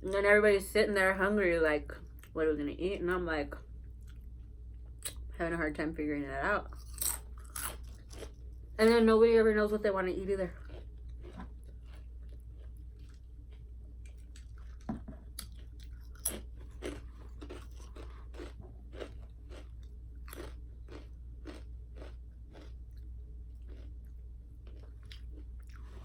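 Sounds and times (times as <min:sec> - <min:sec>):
chewing crunchy food: 0:03.8 - 0:05.3, 0:06.7 - 0:08.8, 0:10.6 - 0:26.0.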